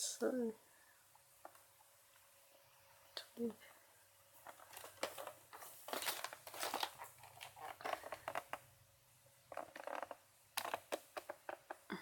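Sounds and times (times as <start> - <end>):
cardboard and plastic crinkling: 4.4 - 8.6.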